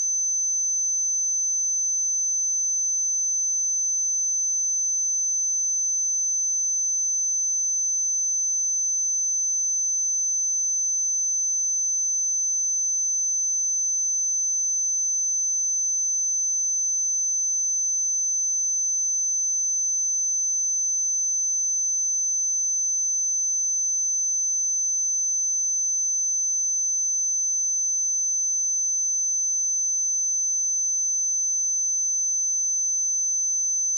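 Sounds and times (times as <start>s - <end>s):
high-pitched sine test tone: 0.0s - 33.9s.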